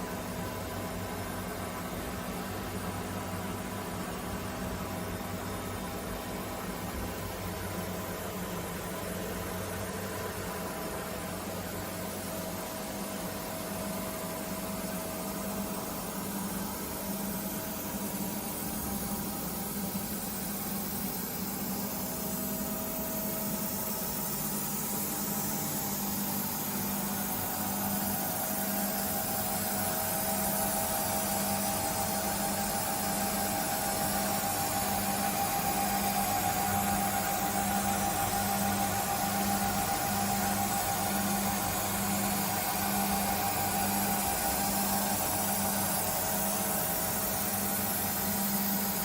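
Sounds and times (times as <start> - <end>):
lathe mechanical hum and hiss: 0.0 - 49.0.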